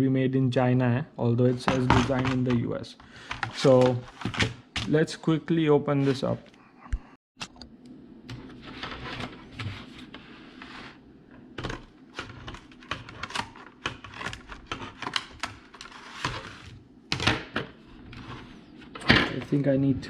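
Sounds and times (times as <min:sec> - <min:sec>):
packaging being opened by hand: 0:11.6 - 0:17.3.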